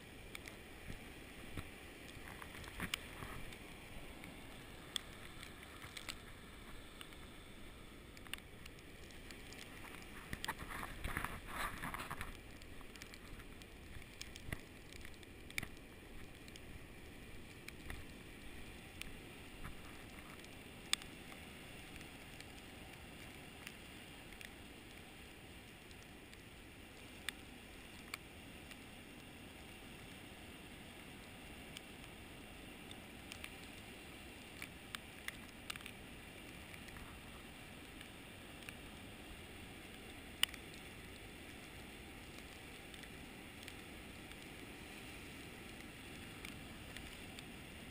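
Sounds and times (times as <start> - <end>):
light ticks and crackles: 0.0 - 47.9
snowstorm wind hiss: 0.0 - 47.9
rustling: 8.2 - 16.6.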